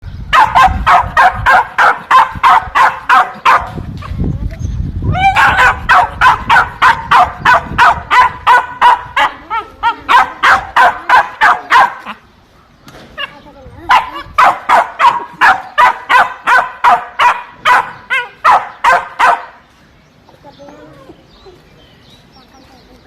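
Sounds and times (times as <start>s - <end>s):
dog barking: 0.3s - 3.8s, 5.3s - 12.2s, 13.9s - 19.6s.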